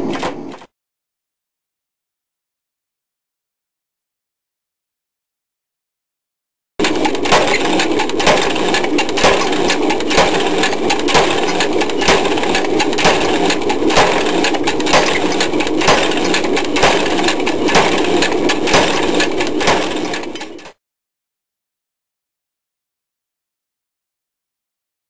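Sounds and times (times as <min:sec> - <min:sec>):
machine running noise: 0:00.0 - 0:00.7, 0:06.8 - 0:20.8
forging hammer striking steel: 0:06.8 - 0:20.8.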